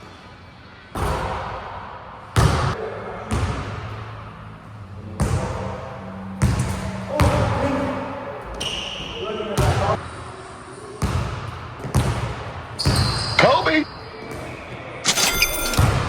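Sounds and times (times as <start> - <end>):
basketball bouncing on court: 2.4 - 4.0, 5.2 - 5.6, 6.4 - 7.6, 11.0 - 13.3.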